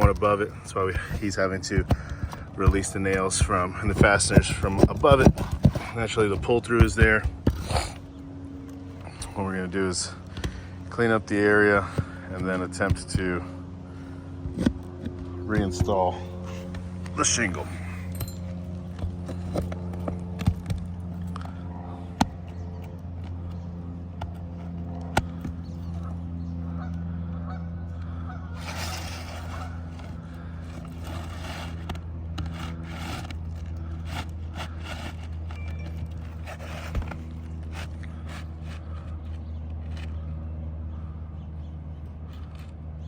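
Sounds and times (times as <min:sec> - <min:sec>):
low mechanical hum with tones: 0:00.0 - 0:43.0
scraping and rustling: 0:28.5 - 0:40.3.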